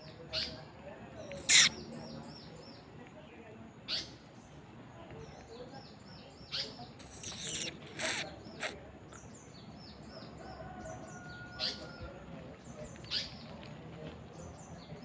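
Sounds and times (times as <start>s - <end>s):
birds chirping: 0.0s - 15.0s
loud sharp bird call: 1.4s - 1.9s.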